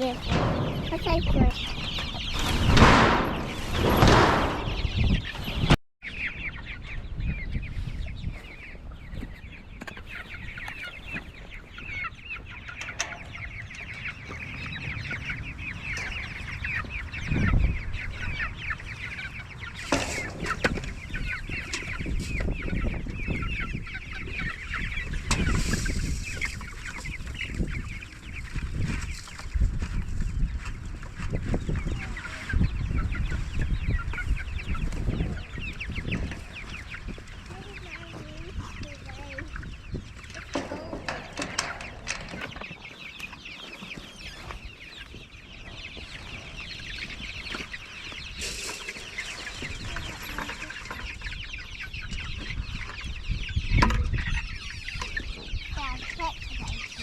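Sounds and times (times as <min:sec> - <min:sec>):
dull low thumps: 0:00.0 - 0:05.8
chicks clucking and peeping: 0:00.0 - 0:57.0.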